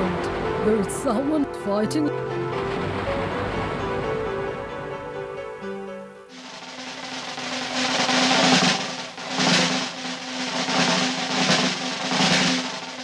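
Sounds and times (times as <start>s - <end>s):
snare drum roll: 6.3s - 13.0s.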